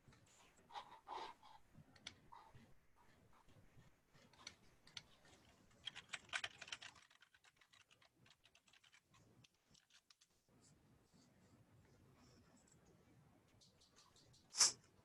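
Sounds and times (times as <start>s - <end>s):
faint typing on computer keyboard: 1.9s - 10.4s.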